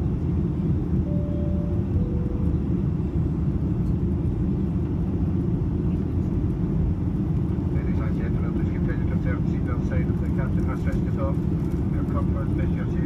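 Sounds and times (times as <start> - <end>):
aircraft cabin engine rumble: 0.0 - 13.0
faint cabin chime tones: 1.0 - 2.6.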